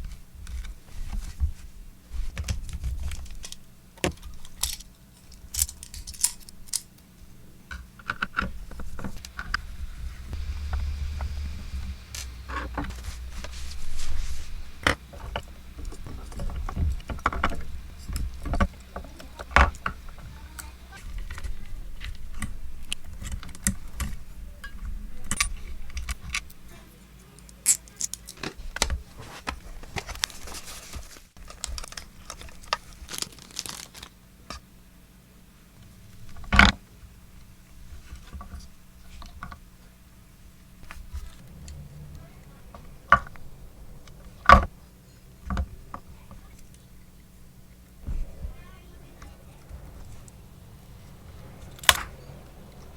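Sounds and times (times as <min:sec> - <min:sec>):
small metal clicks and jingles: 0:03.0 - 0:09.5, 0:15.6 - 0:28.4.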